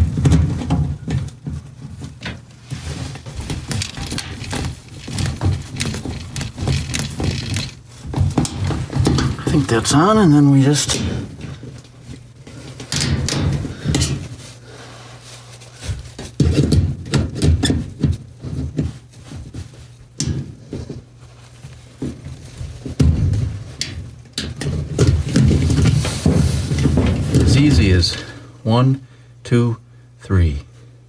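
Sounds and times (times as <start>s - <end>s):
steady low hum: 0.0s - 15.4s, 19.1s - 31.0s
hands knocking and rattling fittings: 3.3s - 12.0s, 12.8s - 14.4s, 15.9s - 19.1s, 22.0s - 27.9s.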